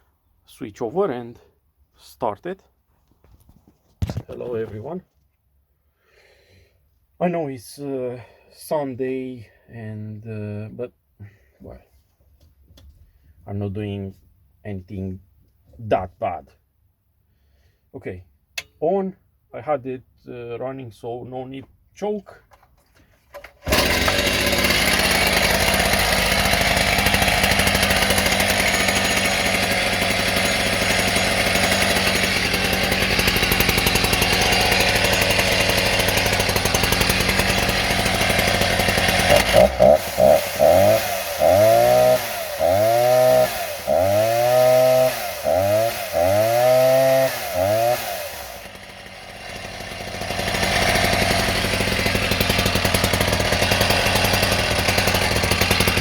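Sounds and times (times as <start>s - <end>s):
chainsaw idling: 22.5s - 56.0s
chainsaw revving: 23.4s - 56.0s.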